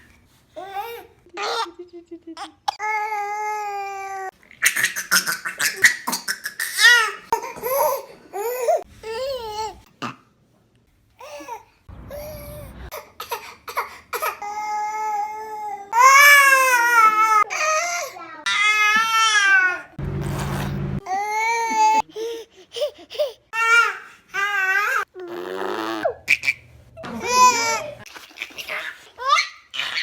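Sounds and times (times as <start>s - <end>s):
baby laughing: 4.6s - 8.8s, 26.0s - 30.0s
baby wailing: 14.2s - 19.9s, 27.0s - 28.0s.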